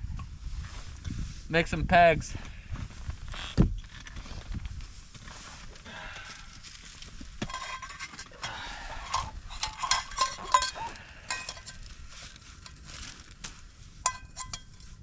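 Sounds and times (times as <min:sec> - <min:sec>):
metal cookware clinking: 0:07.4 - 0:11.8, 0:14.0 - 0:14.9.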